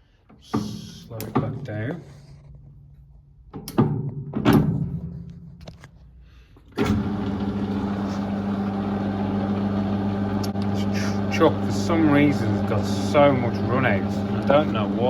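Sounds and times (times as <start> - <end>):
metal lathe humming: 6.8 - 15.0.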